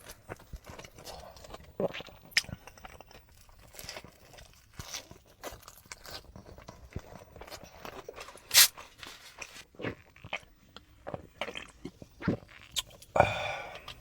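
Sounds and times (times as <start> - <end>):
biting and chewing food: 0.0 - 14.0
loud sharp crunch: 8.3 - 9.6.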